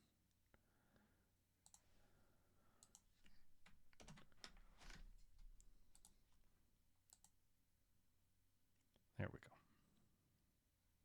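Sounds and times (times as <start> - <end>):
keyboard and mouse clicking: 1.6 - 1.8, 2.8 - 5.0, 5.6 - 6.2, 7.1 - 7.4.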